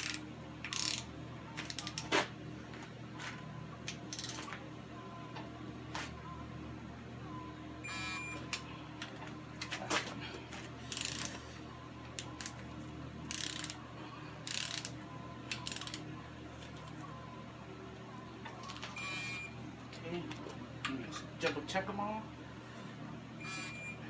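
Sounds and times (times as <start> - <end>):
torque wrench clicks: 0.0 - 2.1, 4.1 - 4.5, 10.9 - 11.4, 13.3 - 13.8, 14.4 - 16.0
wrench ratcheting: 0.0 - 2.1, 4.1 - 4.5, 10.9 - 11.4, 13.3 - 13.8, 14.5 - 15.0, 15.6 - 16.0.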